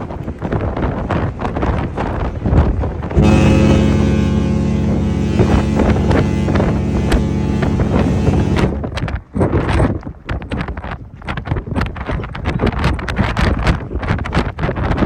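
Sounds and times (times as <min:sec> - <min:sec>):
wind buffeting microphone: 0:00.0 - 0:15.0
ship horn blast: 0:03.1 - 0:08.9.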